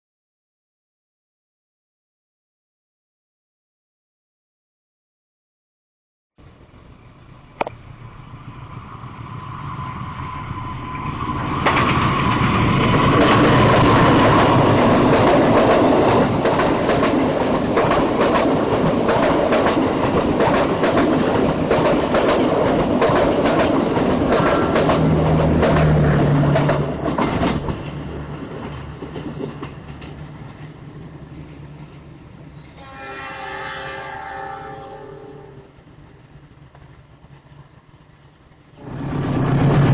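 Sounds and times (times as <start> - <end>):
train wheels clattering over rail joints: 11.5 - 30.8
train horn: 32.6 - 35.9.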